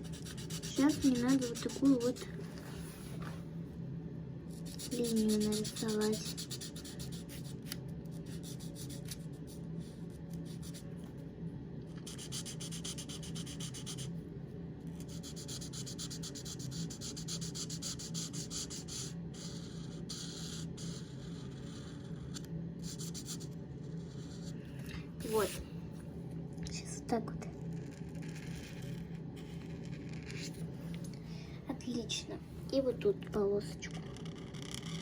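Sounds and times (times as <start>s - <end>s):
marker scratching on paper: 0.0s - 3.3s, 4.5s - 10.8s, 12.0s - 14.1s, 15.0s - 24.6s, 25.2s - 25.6s, 27.7s - 30.6s, 33.9s - 35.0s
steady low hum: 0.0s - 35.0s.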